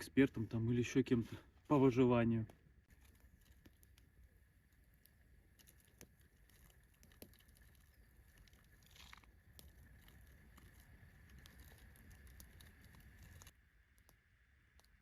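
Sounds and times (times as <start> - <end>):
faint ticks and pattering: 2.9 - 14.2.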